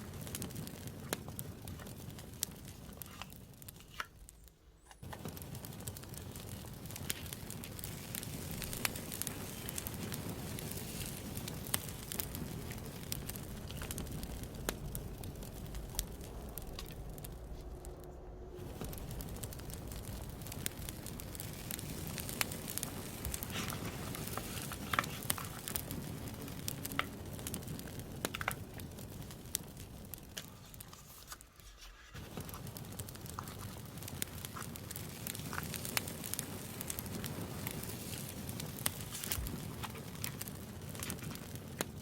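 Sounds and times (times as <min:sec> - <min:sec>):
campfire crackling and popping: 0:00.0 - 0:42.0
low hiss of flame: 0:00.0 - 0:42.0.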